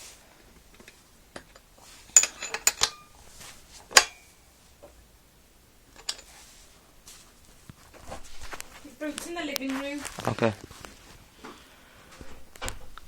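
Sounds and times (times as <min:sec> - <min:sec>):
metallic clinks of bike seat: 0:00.7 - 0:03.2, 0:03.9 - 0:04.3.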